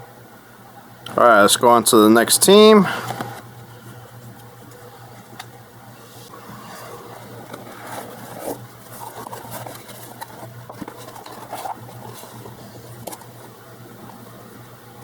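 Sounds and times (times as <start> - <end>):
steady low hum: 0.0 - 15.0
cards scraping and sliding: 4.2 - 14.2.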